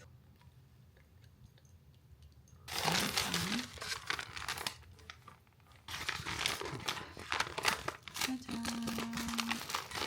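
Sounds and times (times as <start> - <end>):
food packaging crinkling and tearing: 2.7 - 10.0.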